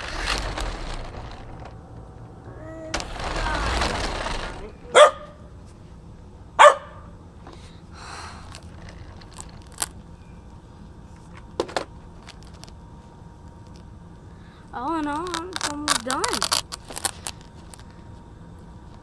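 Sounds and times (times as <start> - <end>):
dog barking: 4.9 - 5.4, 6.6 - 7.1.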